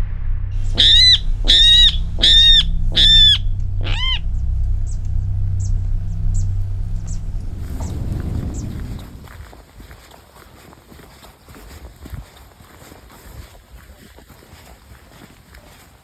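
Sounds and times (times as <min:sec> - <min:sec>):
small bird high notes: 0:00.6 - 0:08.7
water rail squealing calls: 0:00.7 - 0:08.0.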